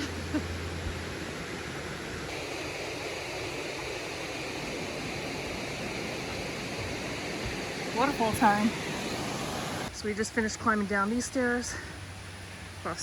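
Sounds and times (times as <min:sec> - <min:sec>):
waterfall rushing: 0:00.0 - 0:09.9.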